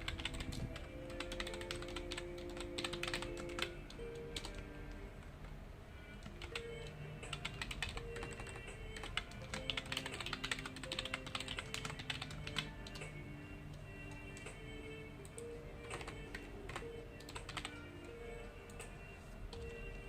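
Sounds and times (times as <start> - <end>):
computer keyboard key clicks: 0.0 - 4.6, 6.2 - 13.1, 15.3 - 17.8
soft background music: 0.0 - 20.0.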